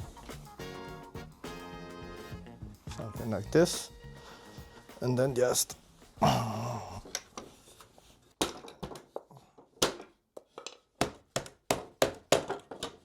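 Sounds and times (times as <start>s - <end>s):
wooden parts knocking together: 8.4s - 13.0s.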